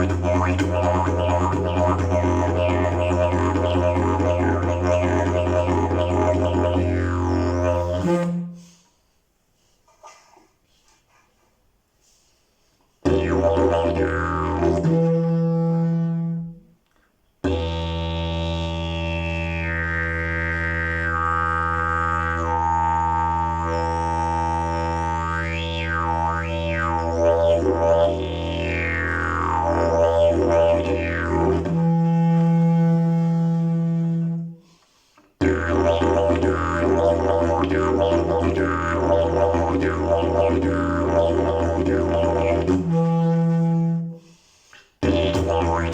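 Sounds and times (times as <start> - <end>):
didgeridoo drone: 0.0 - 8.5, 17.5 - 34.4, 35.4 - 44.2, 45.0 - 45.9.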